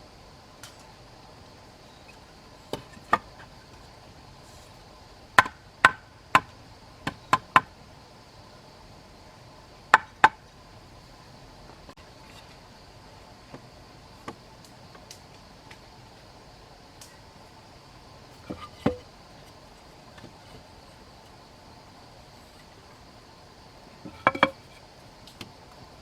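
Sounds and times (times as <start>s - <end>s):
hand tool striking wood: 18.4s - 19.6s, 24.0s - 24.8s.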